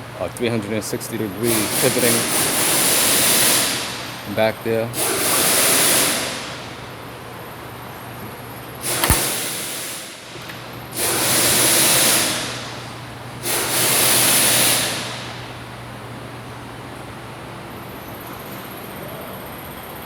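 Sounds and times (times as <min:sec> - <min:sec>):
pneumatic air tool hiss: 0:08.9 - 0:09.4.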